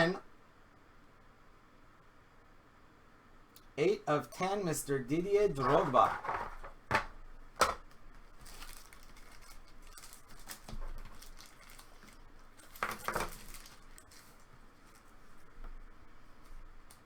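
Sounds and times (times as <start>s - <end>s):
handling noise: 5.5s - 15.8s.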